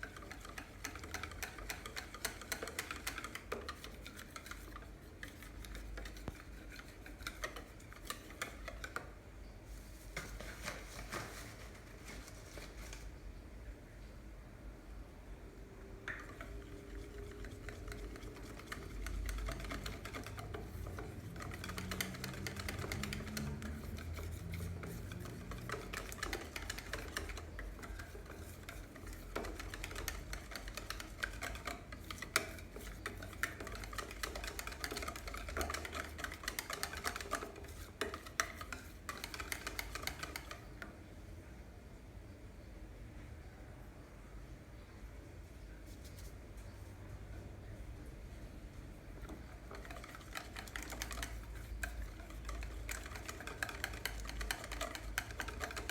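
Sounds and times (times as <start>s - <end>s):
utensil clicking against bowl: 0.0s - 9.1s, 16.0s - 40.8s, 49.2s - 55.9s
utensil beating batter in bowl: 0.0s - 9.2s, 15.8s - 40.9s, 49.0s - 55.9s.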